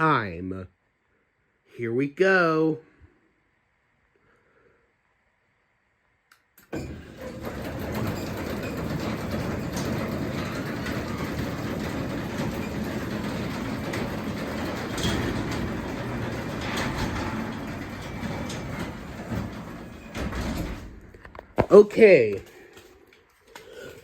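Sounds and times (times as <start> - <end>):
garage door opener rumble: 6.6 - 21.4
garage door clicks: 6.6 - 21.7.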